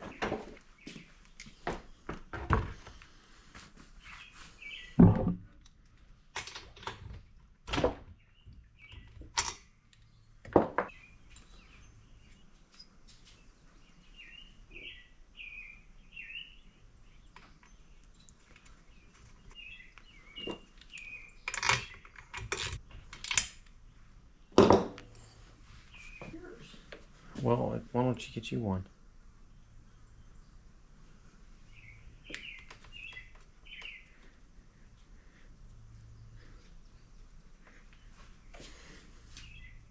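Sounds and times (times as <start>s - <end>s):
small birds chirping: 0.0s - 5.9s, 7.3s - 22.5s, 23.8s - 39.9s.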